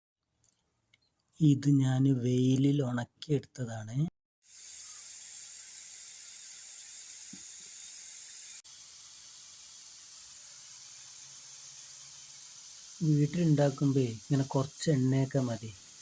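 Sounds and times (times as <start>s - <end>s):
potatoes frying in hot oil: 4.4s - 16.0s.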